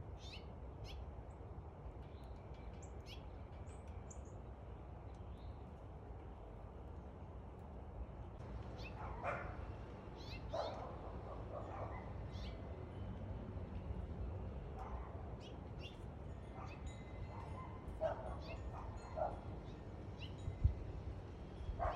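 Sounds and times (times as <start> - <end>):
dog barking: 9.0 - 9.6, 10.5 - 12.2, 16.6 - 16.8, 17.4 - 19.4.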